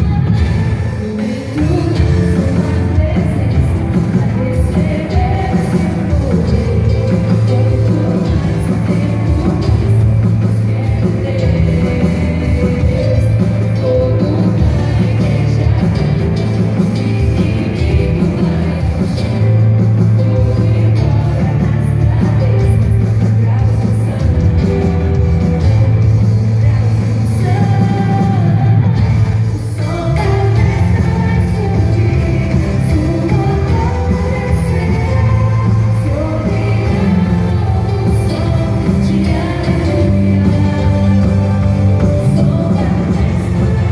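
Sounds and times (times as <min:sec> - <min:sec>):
heavy steady bass: 0:00.0 - 0:00.9, 0:01.6 - 0:43.9
rock worship song with singing: 0:00.0 - 0:43.9.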